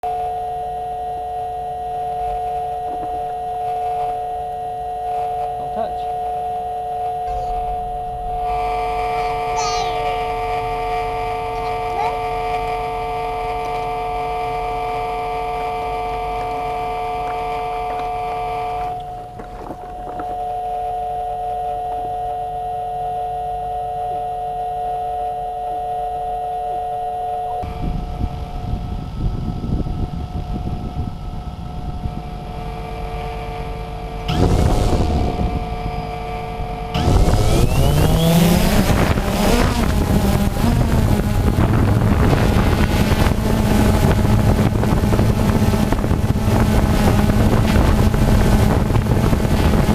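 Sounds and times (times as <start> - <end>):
drone propellers whining: 1.7 - 22.2, 27.3 - 49.9
low wind rumble: 7.2 - 20.7, 27.6 - 49.9.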